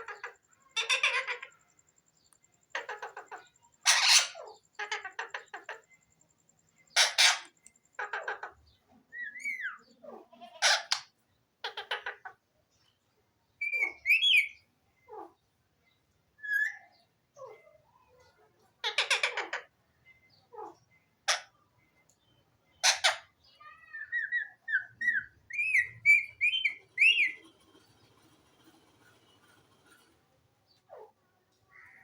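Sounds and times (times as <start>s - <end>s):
parakeet screeching: 0.0s - 1.6s, 2.8s - 5.8s, 6.9s - 8.6s, 9.4s - 12.3s, 18.8s - 19.7s, 20.5s - 21.5s, 22.8s - 27.4s.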